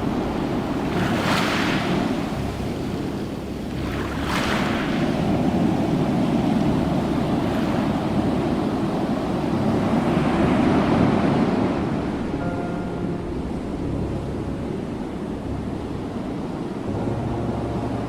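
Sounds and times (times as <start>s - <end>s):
waves breaking: 0.0s - 18.0s.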